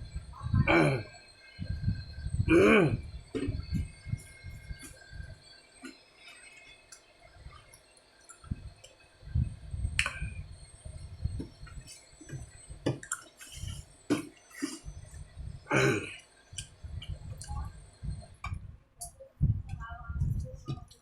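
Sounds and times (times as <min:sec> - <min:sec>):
mouth clicks: 0:10.0 - 0:10.3
chewing with wet mouth smacks: 0:13.0 - 0:13.6.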